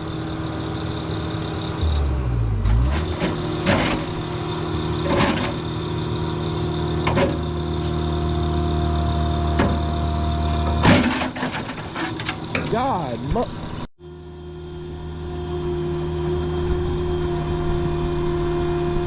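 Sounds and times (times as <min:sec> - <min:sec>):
diesel engine under load: 0:00.0 - 0:19.0
sharp metal clanks: 0:10.7 - 0:13.9.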